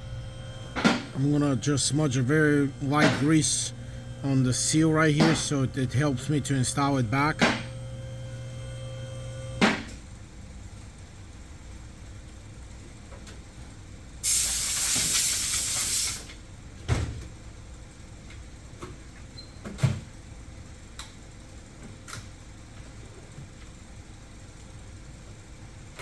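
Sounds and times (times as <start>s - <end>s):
loud steady hiss: 14.2s - 16.4s.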